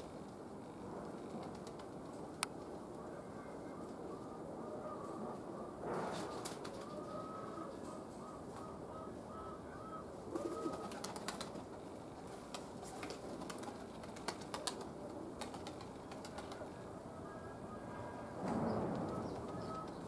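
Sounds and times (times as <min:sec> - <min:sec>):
pigeons cooing: 0:03.1 - 0:11.6, 0:12.8 - 0:20.0.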